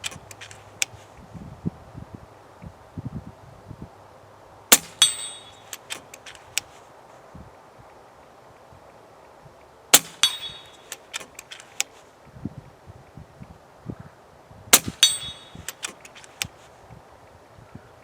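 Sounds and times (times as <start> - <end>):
ringing metallic clang: 4.7 - 6.0, 10.0 - 11.3, 14.8 - 16.0
suppressed air rifle shots: 4.7 - 6.6, 9.9 - 11.9, 14.7 - 16.5.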